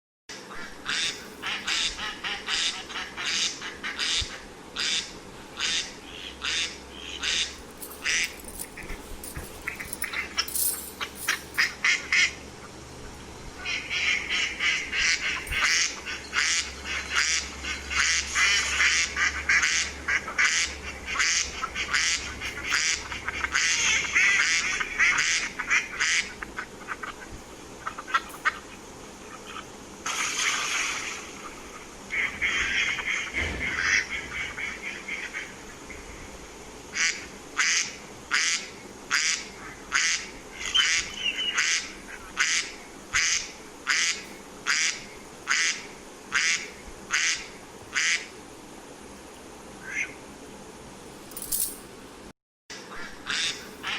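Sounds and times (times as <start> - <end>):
ducks quacking: 0.6 - 7.5.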